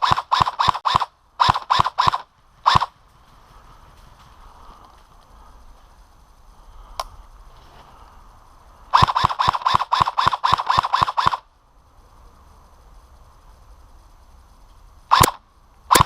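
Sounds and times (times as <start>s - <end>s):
airsoft gun rapid fire: 0.0s - 2.9s, 8.9s - 11.4s, 15.1s - 16.0s.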